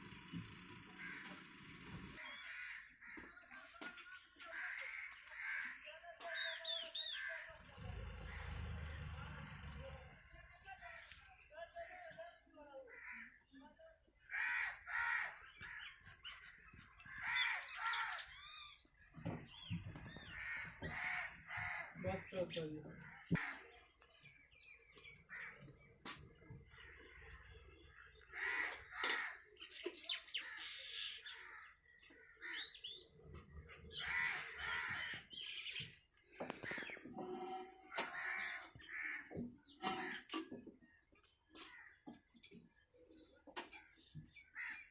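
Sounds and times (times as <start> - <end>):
crows cawing: 0.9 - 8.8, 12.9 - 13.6, 14.2 - 18.9, 20.0 - 23.8, 25.0 - 29.7, 30.3 - 42.4, 44.2 - 44.9.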